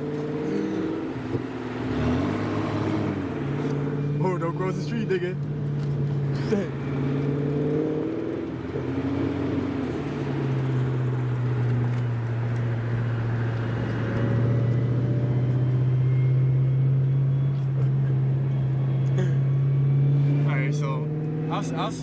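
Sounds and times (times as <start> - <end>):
car engine hum from inside cabin: 0.0 - 22.0.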